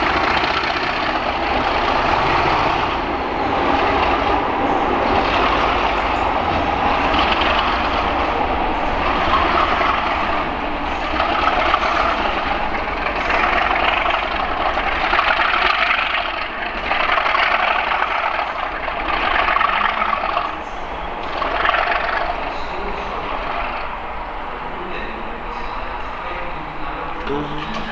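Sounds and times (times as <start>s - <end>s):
diesel locomotive engine working: 0.0s - 27.9s.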